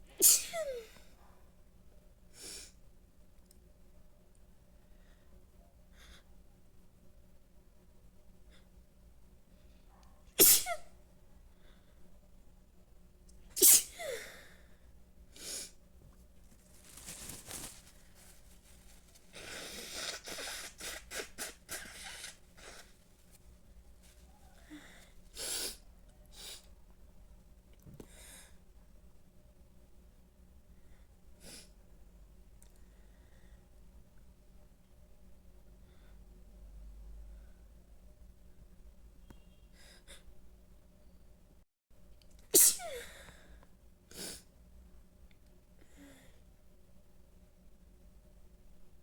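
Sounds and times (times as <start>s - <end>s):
person sneezing: 0.1s - 1.0s, 10.4s - 10.9s, 13.6s - 14.4s, 42.5s - 43.3s.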